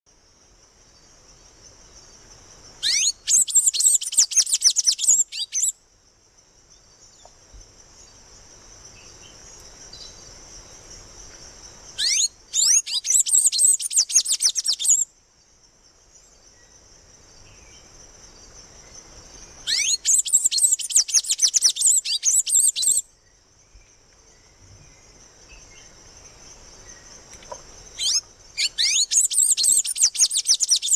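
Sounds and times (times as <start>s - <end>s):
songbird chirping: 0.1s - 30.9s
steady high-pitched hiss: 0.1s - 30.9s.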